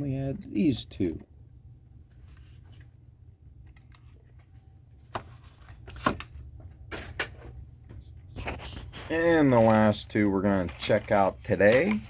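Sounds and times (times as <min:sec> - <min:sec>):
faint low hum: 0:00.0 - 0:12.0
plastic blister packs clicking: 0:09.6 - 0:12.0.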